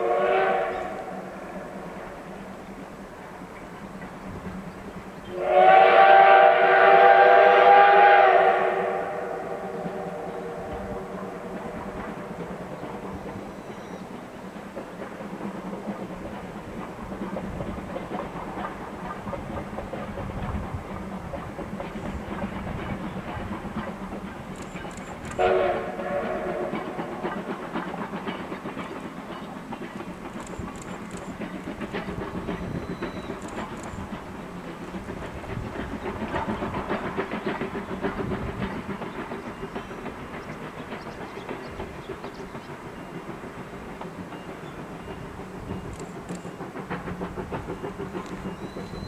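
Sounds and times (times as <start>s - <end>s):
steam whistle blast: 0.0s - 1.2s, 5.3s - 10.6s, 25.4s - 26.9s
steam locomotive rumble and clatter: 0.0s - 49.0s.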